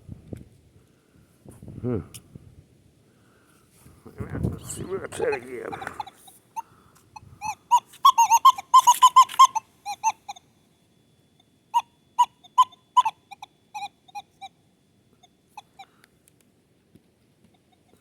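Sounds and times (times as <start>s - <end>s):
metal detector beeps: 4.6s - 6.4s, 7.4s - 10.4s.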